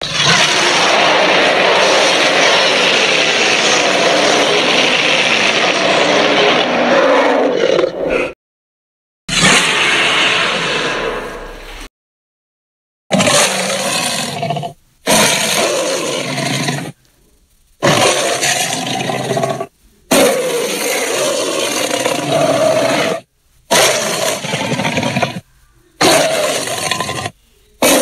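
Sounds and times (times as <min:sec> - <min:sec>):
dinosaur roars: 0:00.0 - 0:08.4, 0:13.1 - 0:17.0, 0:17.8 - 0:25.4, 0:26.0 - 0:28.0.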